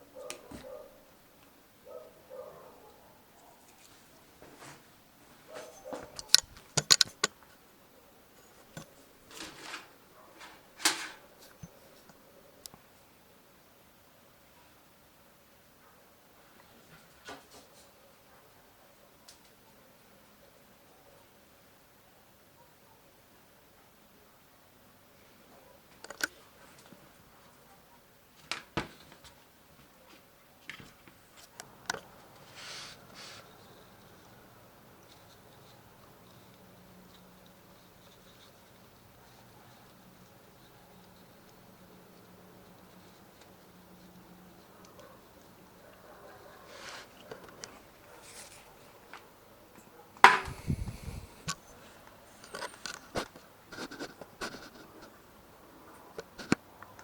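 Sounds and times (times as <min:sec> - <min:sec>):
sharp clicks and knocks: 0:05.6 - 0:07.4
rustling scrape: 0:32.4 - 0:34.2, 0:46.5 - 0:49.0.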